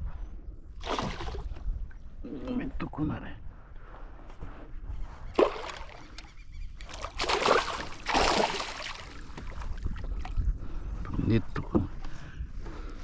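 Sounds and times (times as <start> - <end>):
fish splashing water: 0.8 - 1.5, 5.4 - 6.2, 6.8 - 9.6.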